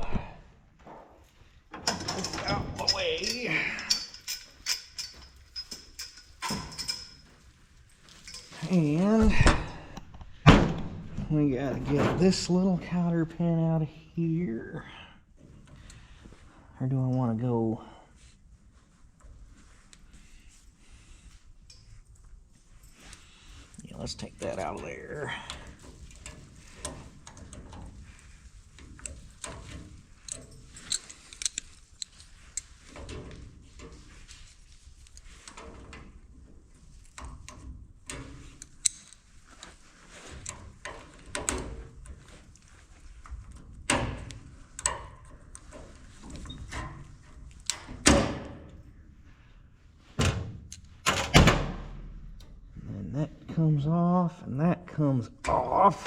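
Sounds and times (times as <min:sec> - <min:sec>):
hand tools and metal parts knocking: 0:00.8 - 0:12.6, 0:22.8 - 0:48.8.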